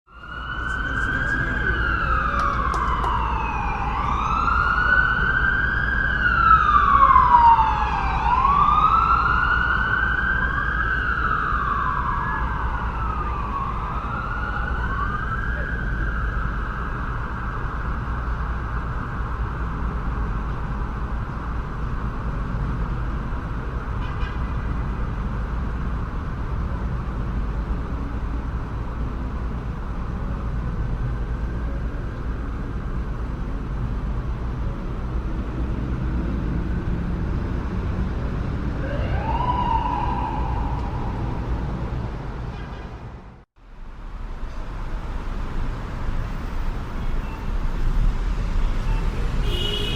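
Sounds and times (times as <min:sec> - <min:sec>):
second siren: 0:00.1 - 0:19.0, 0:38.6 - 0:42.0
emergency vehicle siren wailing: 0:00.1 - 0:23.8, 0:24.8 - 0:42.5
city traffic rumble: 0:00.1 - 0:49.9.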